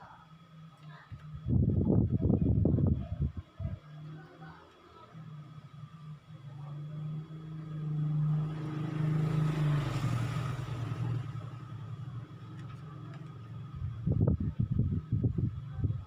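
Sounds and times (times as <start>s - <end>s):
vehicle engine passing: 5.5s - 15.9s.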